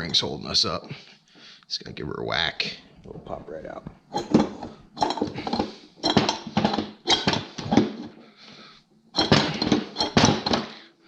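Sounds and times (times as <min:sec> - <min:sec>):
mallet striking metal engine parts: 0:09.2 - 0:10.7.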